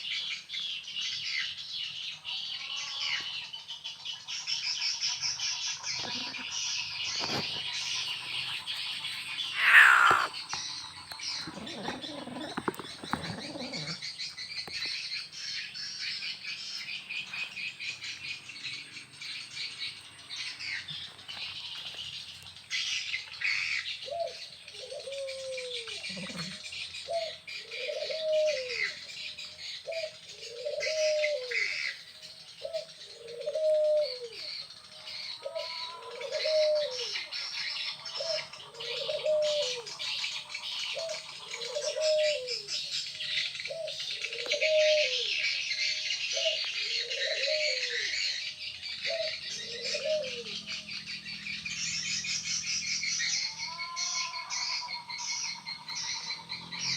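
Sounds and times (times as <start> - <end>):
birds chirping and twittering: 0.0 - 56.9
low arched bird call: 5.9 - 14.3.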